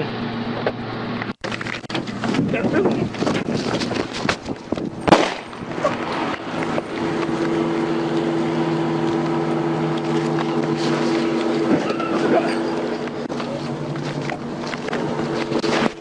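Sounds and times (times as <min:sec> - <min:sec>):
steady engine-like drone: 0:00.0 - 0:16.0
sharp bang: 0:05.1 - 0:05.6.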